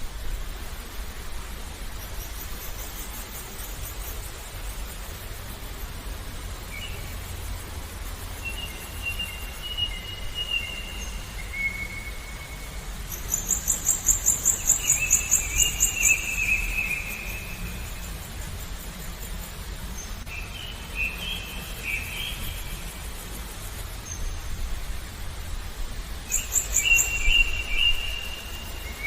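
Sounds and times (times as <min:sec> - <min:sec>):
songbirds whistling: 0:08.4 - 0:18.2, 0:26.3 - 0:29.0.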